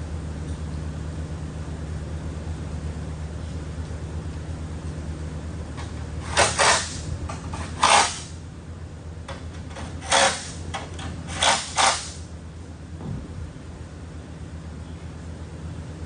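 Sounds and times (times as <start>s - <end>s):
steady low hum: 0.0s - 16.0s
sharp scraping noises: 5.8s - 8.4s, 9.7s - 12.3s.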